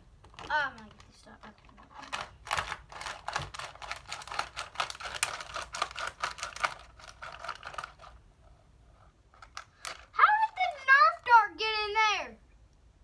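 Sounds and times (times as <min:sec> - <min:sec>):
plastic bottle clicks and scratches: 0:00.2 - 0:08.2.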